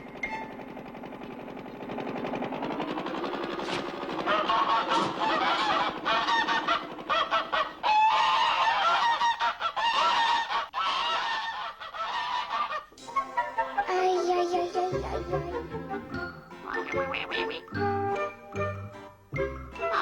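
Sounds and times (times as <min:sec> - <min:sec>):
cartoon honking animal calls: 0:16.6 - 0:17.9, 0:19.8 - 0:20.0.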